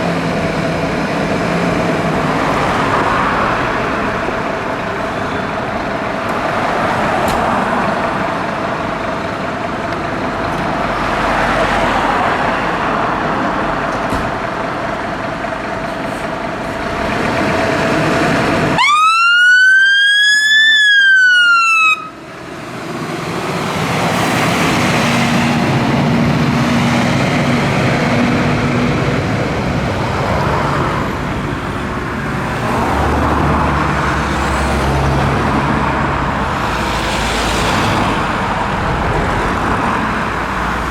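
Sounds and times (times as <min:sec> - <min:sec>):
traffic road and engine noise: 0:00.0 - 0:40.9
fire engine siren wailing: 0:18.4 - 0:29.5.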